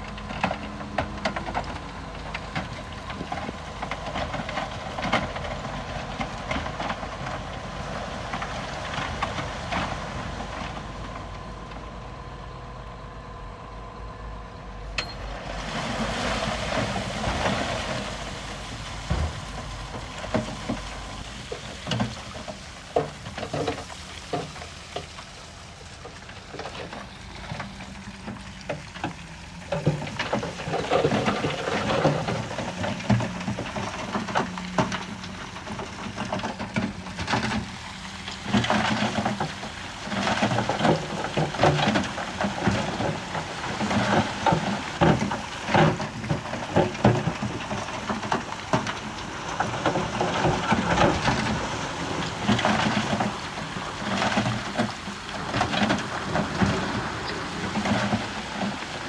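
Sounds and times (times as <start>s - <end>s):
rocks clattering and crunching: 0.0s - 11.5s, 15.0s - 59.0s
diesel engine hum: 0.0s - 59.0s.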